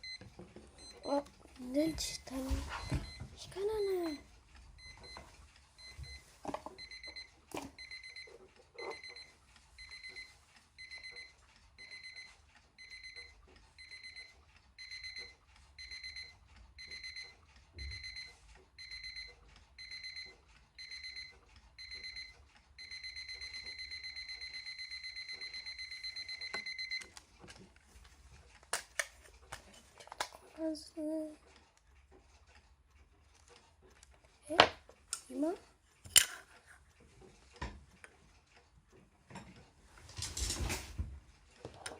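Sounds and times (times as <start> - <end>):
alarm clock beeping: 0.0 - 27.2.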